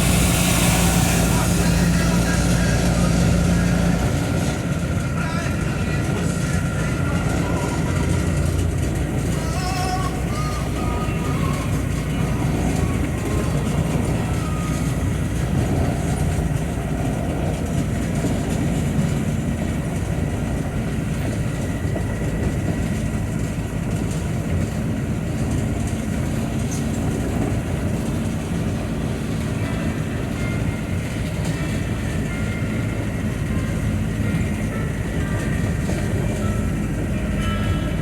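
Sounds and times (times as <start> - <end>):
spray and rain hiss: 0.0 - 3.4
vehicle engine and tyre drone: 0.0 - 38.0.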